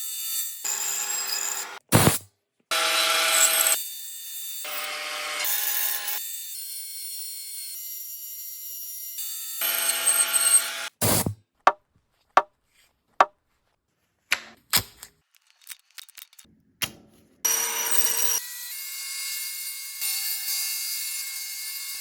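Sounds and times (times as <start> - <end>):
bandsaw cutting wood: 0.7 - 3.9, 4.6 - 6.4, 9.6 - 11.4.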